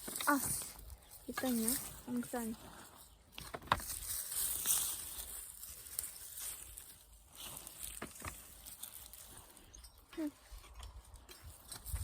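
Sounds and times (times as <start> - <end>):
soil and plants rustling: 0.0 - 12.0.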